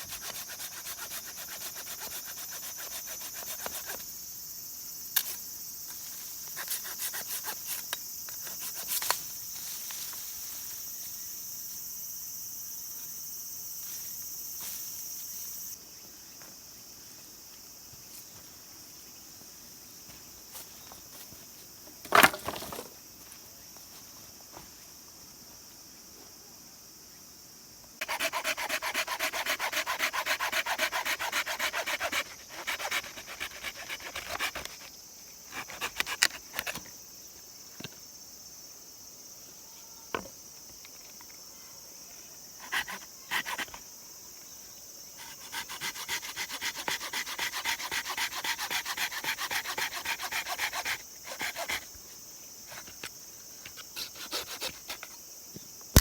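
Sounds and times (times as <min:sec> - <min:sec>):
fast repeated scraping strokes: 0:28.0 - 0:34.8, 0:45.2 - 0:51.9.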